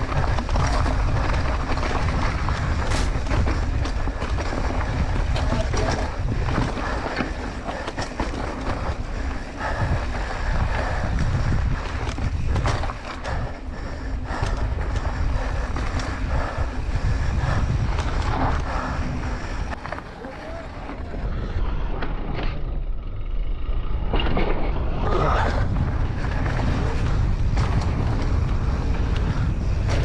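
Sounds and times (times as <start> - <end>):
wind buffeting microphone: 0.0 - 30.0
low rumble: 17.1 - 30.0.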